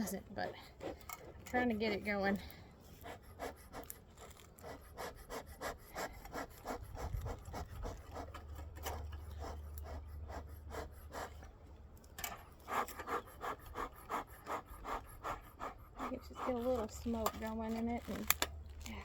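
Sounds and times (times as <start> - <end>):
bellows puffing: 2.4 - 11.5, 12.6 - 17.2.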